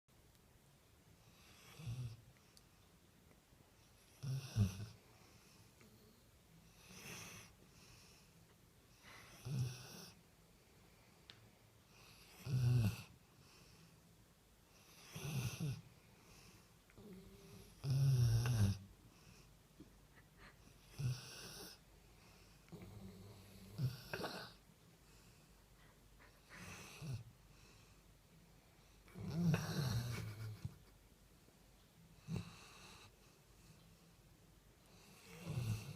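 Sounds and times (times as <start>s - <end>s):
dog snoring: 1.3s - 2.2s, 4.0s - 5.6s, 6.7s - 8.2s, 9.0s - 10.2s, 11.9s - 13.8s, 14.7s - 19.4s, 20.7s - 24.6s, 26.2s - 27.9s, 29.0s - 30.7s, 32.2s - 33.7s, 34.9s - 35.9s
dog wheezy breath: 25.8s - 27.2s.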